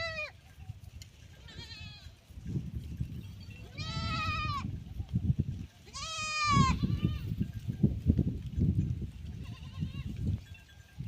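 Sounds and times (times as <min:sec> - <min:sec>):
goats bleating: 0:00.0 - 0:00.4, 0:01.3 - 0:02.2, 0:03.4 - 0:04.7, 0:05.8 - 0:07.4, 0:09.4 - 0:10.2.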